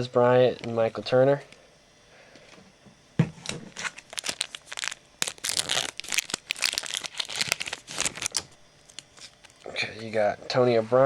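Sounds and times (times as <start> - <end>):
wrapper crackling and rustling: 3.7 - 9.7.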